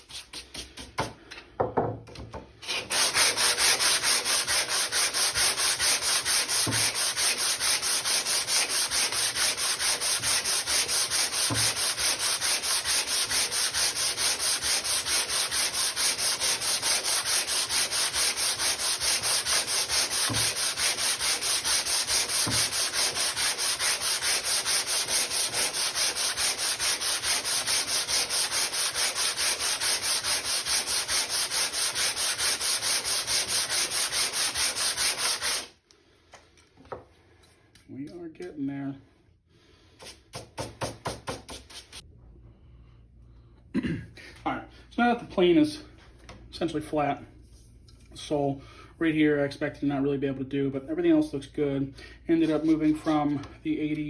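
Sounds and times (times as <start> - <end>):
metal scrubbing on sandpaper: 2.6 - 35.7, 41.3 - 42.0, 52.4 - 53.3.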